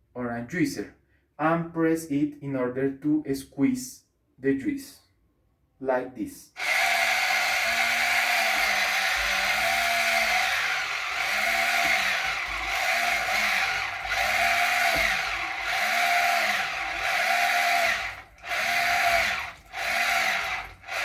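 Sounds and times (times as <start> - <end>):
citrus juicer motor: 6.6 - 21.0.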